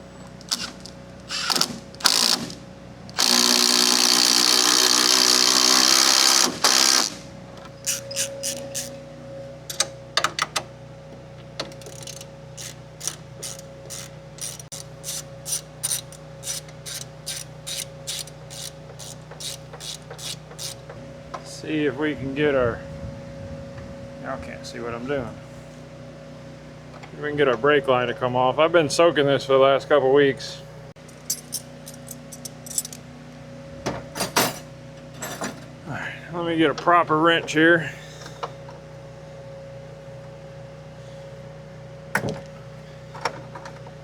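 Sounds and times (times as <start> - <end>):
loud mechanical whir: 0.0 - 10.4, 11.8 - 20.9
ratchet wrench clicking: 0.4 - 7.2, 7.8 - 9.0, 11.7 - 20.8.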